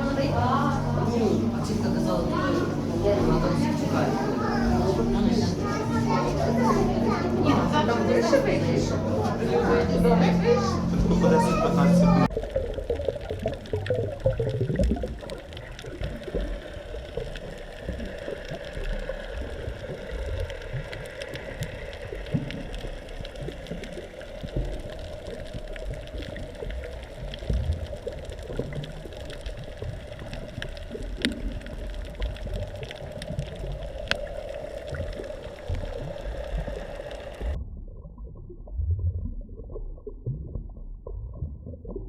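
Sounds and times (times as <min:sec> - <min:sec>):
constant mid-pitched hum: 0:00.0 - 0:37.6
low churning rumble: 0:00.0 - 0:42.0
water washing and gurgling: 0:00.0 - 0:42.0
faint clicks: 0:12.6 - 0:37.6.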